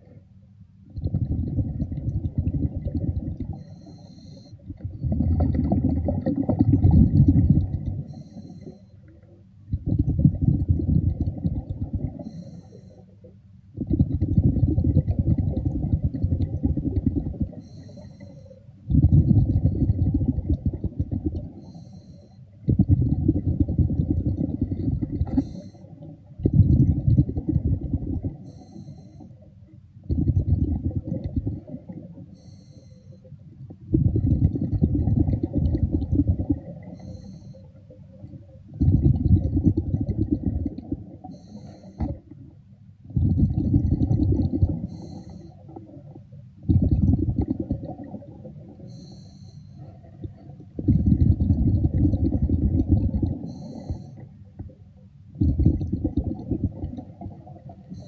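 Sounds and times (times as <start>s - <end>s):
bubbles rumbling underwater: 0.8s - 3.7s, 4.6s - 8.2s, 9.1s - 12.3s, 13.7s - 17.7s, 18.8s - 21.6s, 22.6s - 28.5s, 30.0s - 32.3s, 33.6s - 37.1s, 37.8s - 41.4s, 42.0s - 49.0s, 49.8s - 58.0s
regulator inhale hissing: 3.6s - 4.6s, 8.0s - 9.0s, 12.2s - 13.1s, 17.6s - 18.6s, 21.6s - 22.5s, 24.9s - 26.0s, 28.4s - 29.3s, 32.3s - 33.3s, 36.9s - 37.8s, 41.3s - 42.1s, 44.9s - 45.7s, 48.9s - 49.9s, 53.4s - 54.3s.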